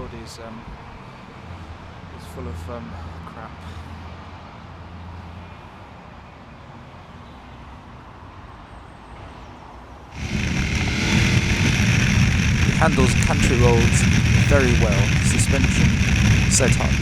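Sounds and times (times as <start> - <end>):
motorcycle engine: 10.2 - 17.0
wind rush: 10.2 - 17.0.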